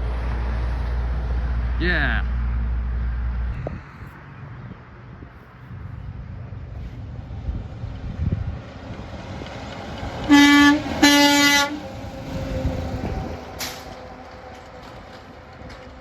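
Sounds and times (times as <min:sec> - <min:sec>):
passing traffic rumble: 0:00.0 - 0:16.0
truck air horn blasts: 0:10.3 - 0:11.8.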